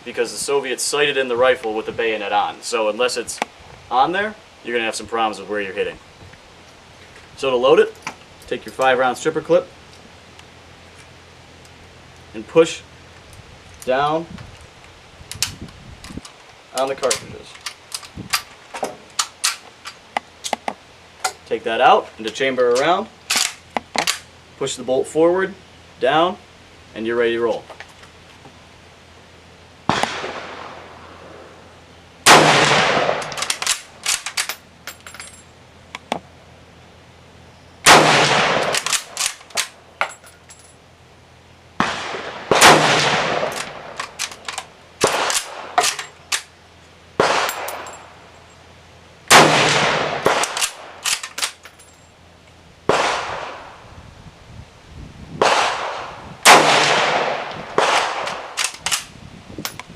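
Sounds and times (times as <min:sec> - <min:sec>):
rifle shots with ringing echo: 0:29.9 - 0:31.5, 0:32.3 - 0:34.2, 0:37.8 - 0:39.8, 0:41.8 - 0:44.2, 0:45.0 - 0:46.0, 0:47.2 - 0:48.2, 0:49.3 - 0:51.6, 0:52.9 - 0:53.8, 0:55.4 - 0:59.0
rifle bolt clicking: 0:50.4 - 0:51.6.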